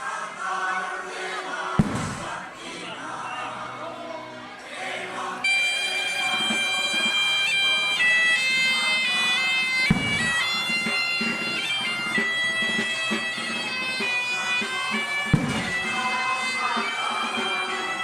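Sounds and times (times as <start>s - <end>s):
bagpipe melody: 0.0s - 18.0s
sharp bangs: 1.8s - 3.0s, 9.9s - 17.2s.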